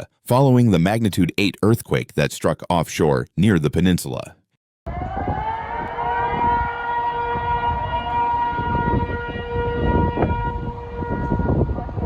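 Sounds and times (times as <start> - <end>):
fainter second siren tone: 4.9 - 12.0
warning siren wailing: 4.9 - 12.0.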